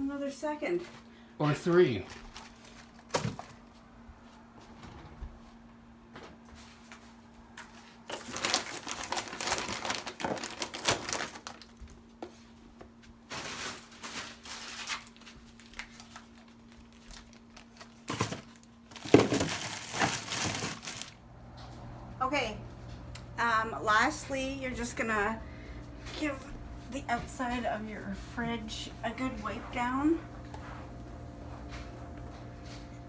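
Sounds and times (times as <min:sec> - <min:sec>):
faint steady hum: 0:00.0 - 0:33.0
crinkling and rustling: 0:01.7 - 0:03.8, 0:06.3 - 0:21.9.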